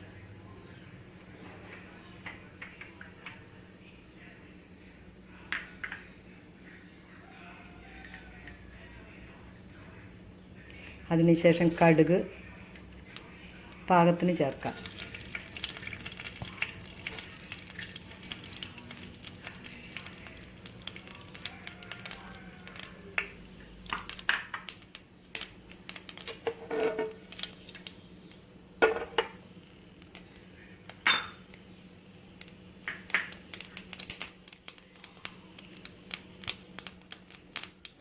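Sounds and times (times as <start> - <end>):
metal spoon clinking against pan: 8.0 - 8.8, 31.0 - 31.5
seeds sizzling and popping in oil: 14.6 - 38.0.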